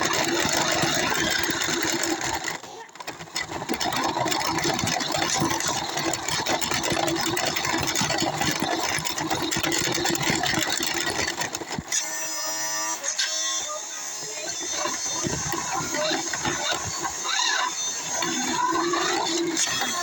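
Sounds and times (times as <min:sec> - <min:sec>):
rc car motor running: 0:00.0 - 0:20.0.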